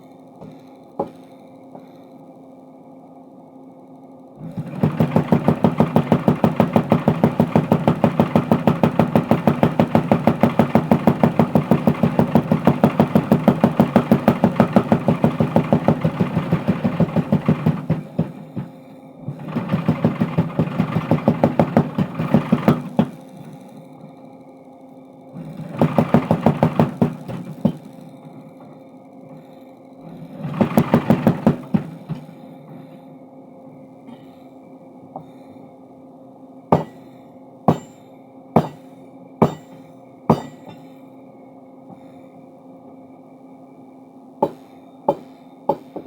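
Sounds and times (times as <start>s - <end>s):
power hammer motor humming: 4.4s - 23.8s, 25.4s - 28.7s, 30.0s - 32.8s
power hammer pounding steel: 4.5s - 23.3s, 25.4s - 28.0s, 30.1s - 32.8s, 36.7s - 37.1s, 37.7s - 38.0s, 38.6s - 40.9s, 44.4s - 46.0s.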